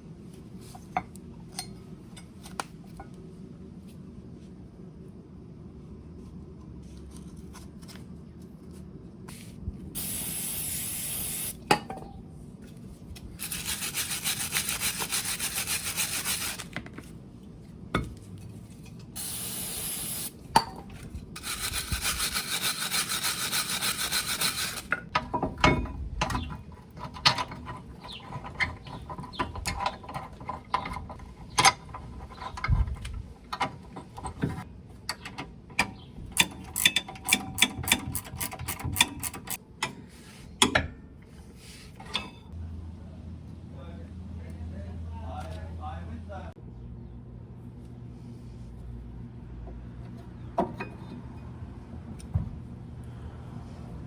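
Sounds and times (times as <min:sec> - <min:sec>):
metal parts clinking: 0:13.4 - 0:16.7
wire brush scrubbing metal: 0:13.4 - 0:16.8, 0:21.4 - 0:25.0.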